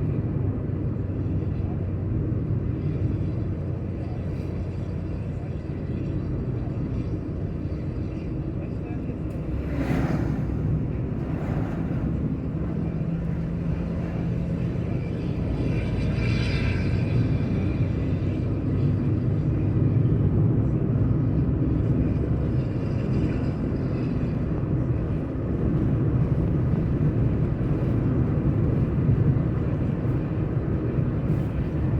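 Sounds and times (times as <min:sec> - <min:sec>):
truck diesel engine running: 0:09.2 - 0:15.7.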